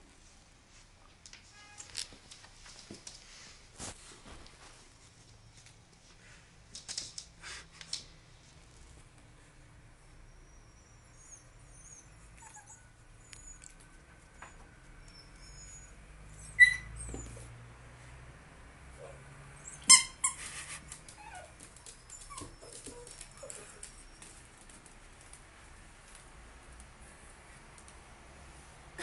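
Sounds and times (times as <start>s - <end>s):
dog toy squeaks: 15.1s - 17.4s, 19.6s - 21.5s.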